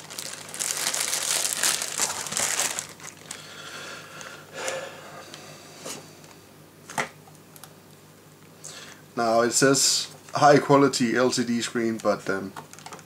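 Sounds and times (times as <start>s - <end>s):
wrapping crinkling and rustling: 0.0s - 3.5s, 11.3s - 13.0s.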